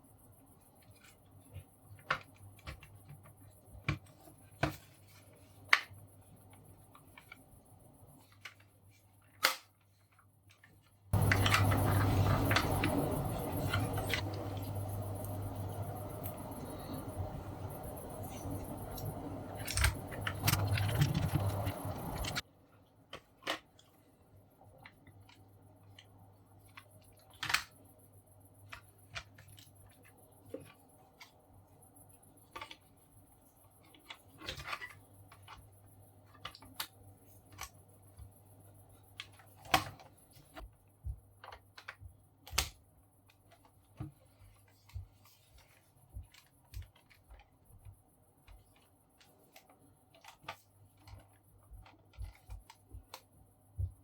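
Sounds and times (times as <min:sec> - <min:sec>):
loud steady noise with low hum: 0:11.2 - 0:22.4.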